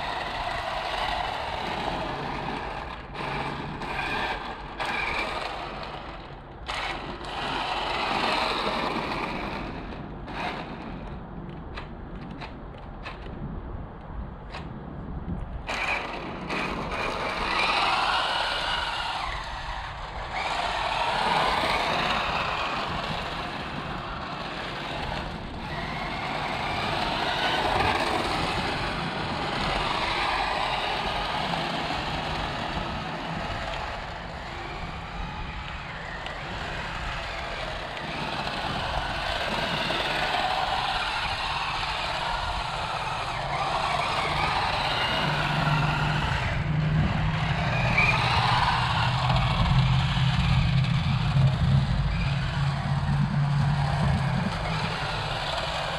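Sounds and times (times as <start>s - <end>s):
toy car electric motor whirring: 0.0s - 11.2s, 15.6s - 55.9s
tyres scrubbing and skidding: 15.7s - 55.9s.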